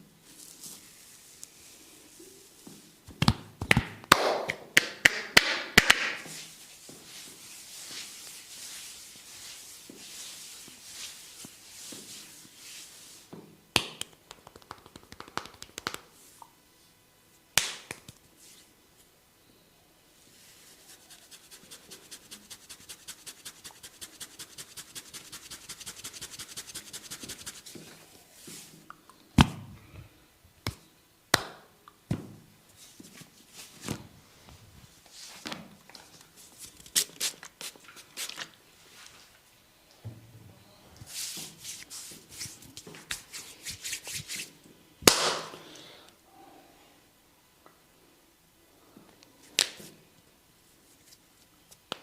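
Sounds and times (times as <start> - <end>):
hands rubbing through hair: 6.0 - 13.3, 14.0 - 16.4, 20.4 - 28.8, 41.1 - 44.6
fast even hand taps: 13.8 - 16.0.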